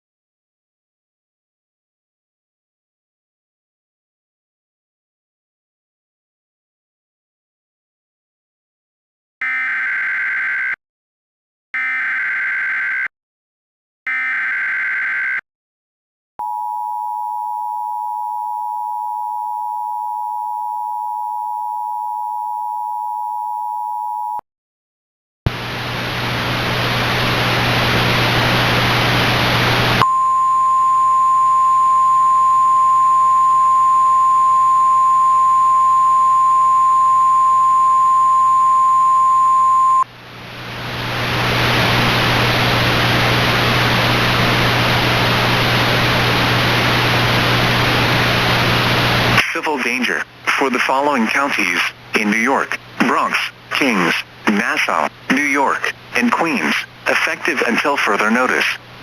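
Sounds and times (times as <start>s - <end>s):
static hiss with hum: 25.5s - 30.0s, 40.3s - 59.0s.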